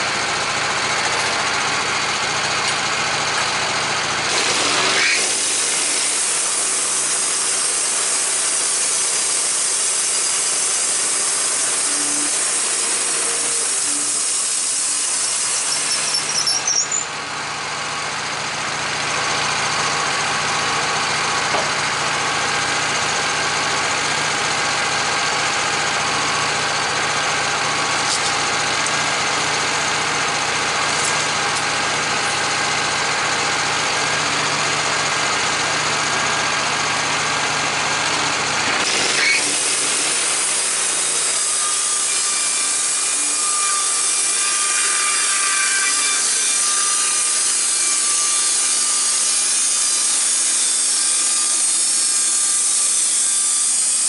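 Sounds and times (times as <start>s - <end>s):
engine hum: 0.0s - 5.0s, 15.8s - 40.4s
saw blade cutting log: 0.0s - 54.0s.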